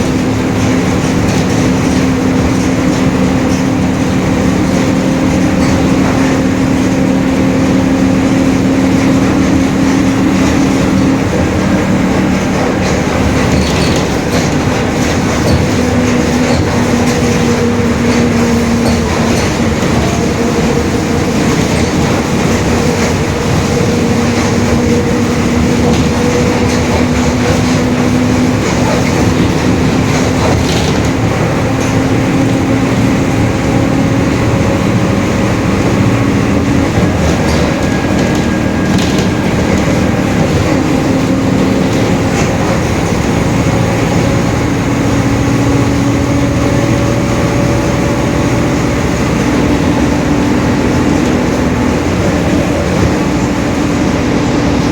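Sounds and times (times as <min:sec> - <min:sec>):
diesel bus engine running: 0:00.0 - 0:54.9.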